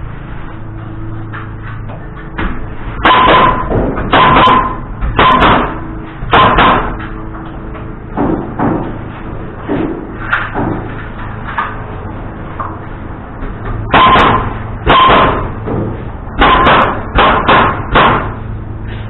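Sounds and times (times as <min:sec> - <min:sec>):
steady low hum: 0:00.0 - 0:19.0
hammer striking wood: 0:03.0 - 0:07.1, 0:13.9 - 0:18.4.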